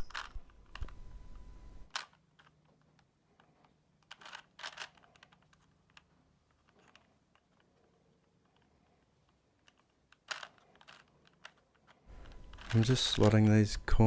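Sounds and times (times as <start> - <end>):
puzzle cube plastic clicks: 1.9 - 13.8.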